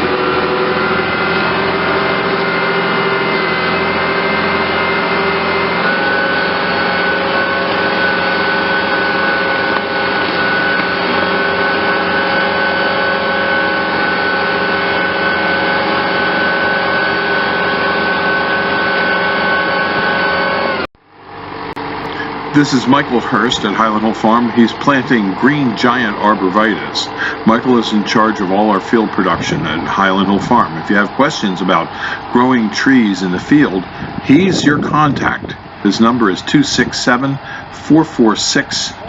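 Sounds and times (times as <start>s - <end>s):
tractor engine running: 0.0s - 39.0s.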